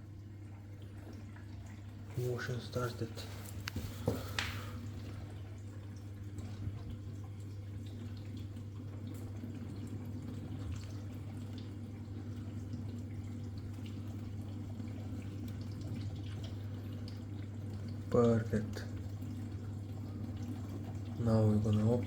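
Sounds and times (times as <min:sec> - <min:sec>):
dishwasher pump humming: 0:00.0 - 0:22.0
water spraying and dripping: 0:02.0 - 0:05.3.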